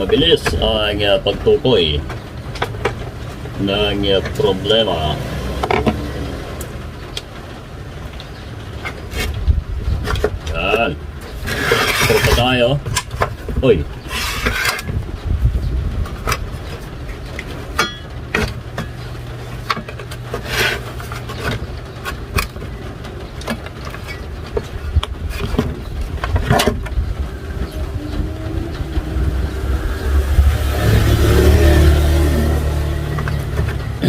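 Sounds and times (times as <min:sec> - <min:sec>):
steady low rumble: 0:12.7 - 0:23.4, 0:24.1 - 0:34.0.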